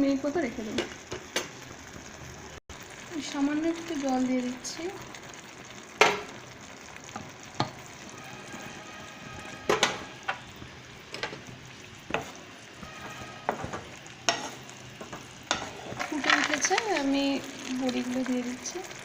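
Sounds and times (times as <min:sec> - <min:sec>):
low sizzle: 0:00.0 - 0:19.0
spatula stirring vegetables: 0:07.0 - 0:19.0.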